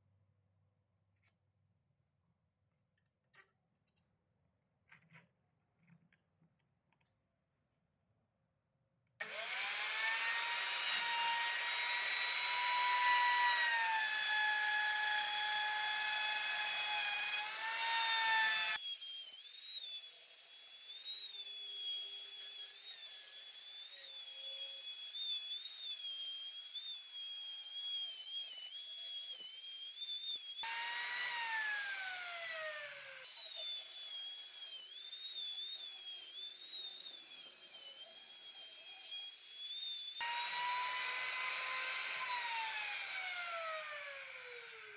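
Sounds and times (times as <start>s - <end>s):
power tool motor whining: 9.2s - 44.9s.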